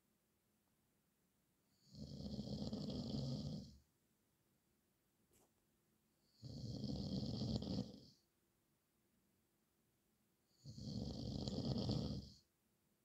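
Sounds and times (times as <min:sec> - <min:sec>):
man snoring: 0:01.8 - 0:03.8, 0:06.4 - 0:08.2, 0:10.6 - 0:12.4.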